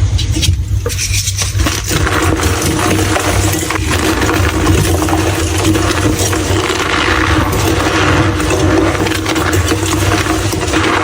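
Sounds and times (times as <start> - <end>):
chalk crunching by hand: 0.2 - 11.0.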